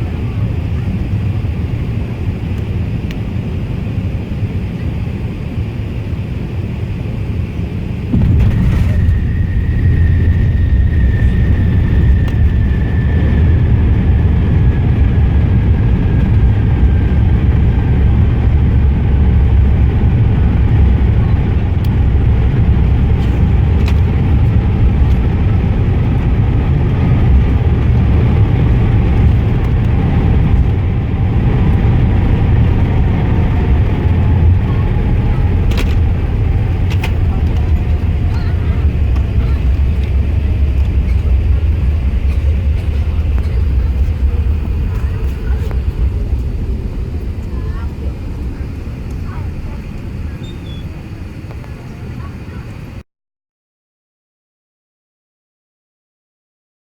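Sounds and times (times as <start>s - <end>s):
airliner cabin rumble: 0.0s - 53.0s
high whine falling in pitch: 8.1s - 14.8s.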